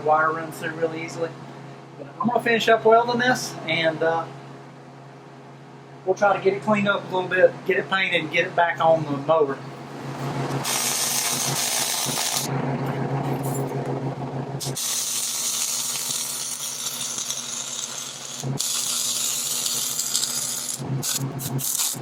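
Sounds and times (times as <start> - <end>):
low hum: 9.6 - 21.8
welding arc sizzling crackle: 10.5 - 12.5, 14.6 - 22.0.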